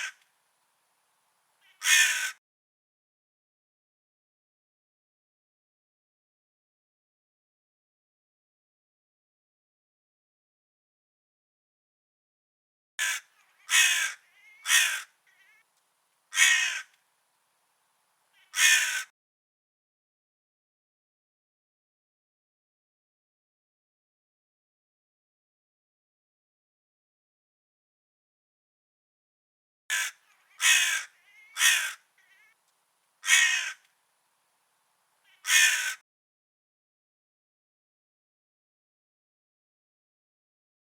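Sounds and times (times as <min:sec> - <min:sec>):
crow cawing: 0:01.6 - 0:02.4, 0:13.0 - 0:15.6, 0:16.3 - 0:17.0, 0:18.4 - 0:19.1, 0:29.9 - 0:32.6, 0:33.2 - 0:33.9, 0:35.3 - 0:36.0.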